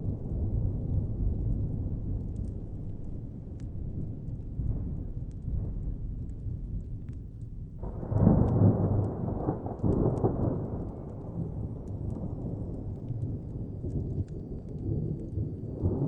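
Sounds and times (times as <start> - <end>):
thunder rumbling: 0.0 - 16.0
wood fire crackling: 0.0 - 16.0
thunder roll: 7.8 - 16.0.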